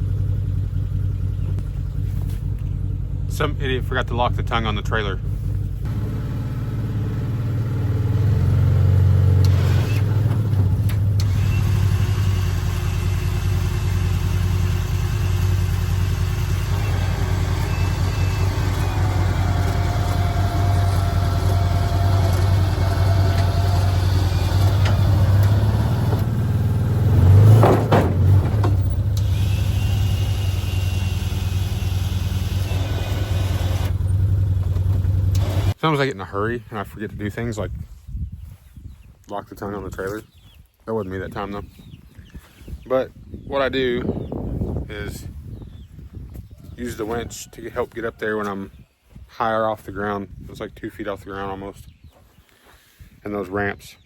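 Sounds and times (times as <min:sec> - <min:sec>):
utility vehicle engine idling: 0:00.0 - 0:35.8.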